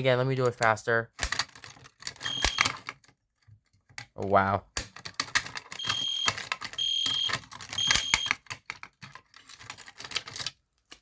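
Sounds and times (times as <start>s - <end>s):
fire alarm horn beeps: 2.3s - 2.6s, 5.8s - 8.4s.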